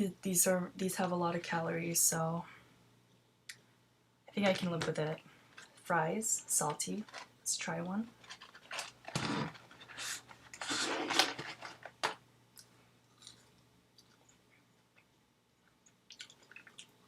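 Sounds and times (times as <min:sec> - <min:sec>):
soft chewing clicks: 0:12.5 - 0:17.0
person eating fries: 0:13.0 - 0:15.1, 0:15.7 - 0:17.0.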